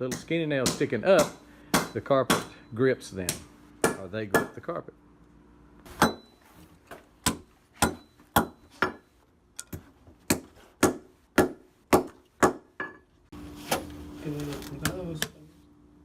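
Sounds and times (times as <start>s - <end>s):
hammer striking nails: 0.1s - 2.6s, 6.0s - 6.3s, 7.2s - 9.1s, 9.7s - 12.9s.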